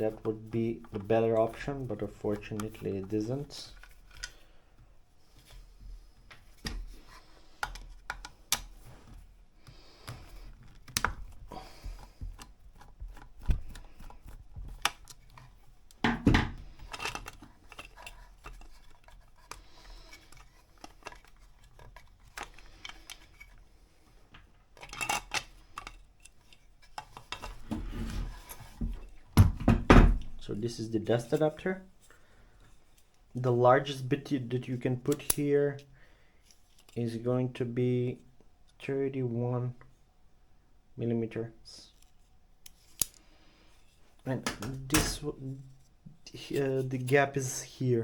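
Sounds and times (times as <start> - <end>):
parts clattering: 0.0 - 30.5
small clicks and clinks of parts: 16.6 - 23.6, 24.3 - 27.6, 42.0 - 43.3.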